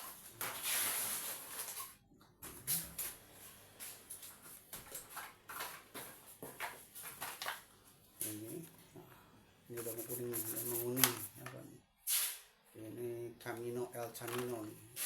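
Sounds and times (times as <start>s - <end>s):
blister packs rustling and crinkling: 14.2s - 14.8s.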